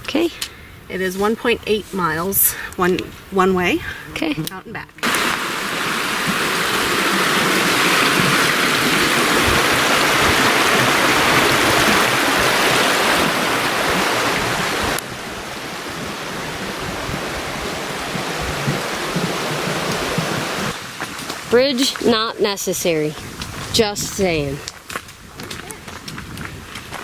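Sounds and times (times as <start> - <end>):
rushing creek water: 5.0 - 22.4.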